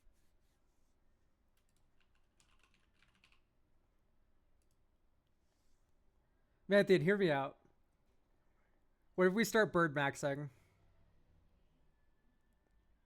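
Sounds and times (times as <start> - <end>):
faint keyboard typing: 1.5 - 3.6, 4.5 - 5.0.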